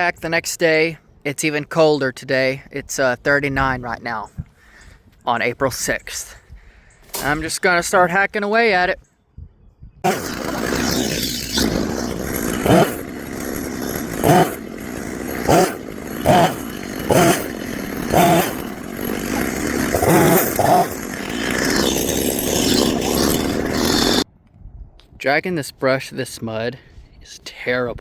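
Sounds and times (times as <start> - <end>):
chainsaw revving: 10.0 - 24.2.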